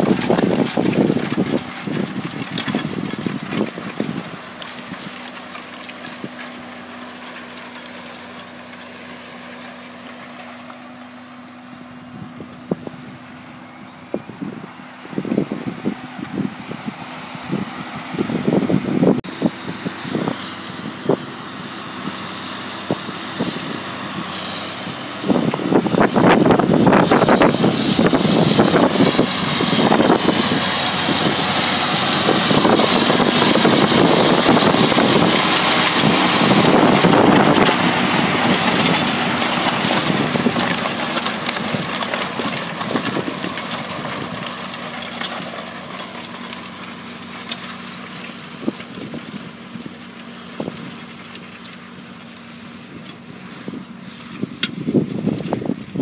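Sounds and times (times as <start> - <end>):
tractor engine running: 0.0 - 56.0.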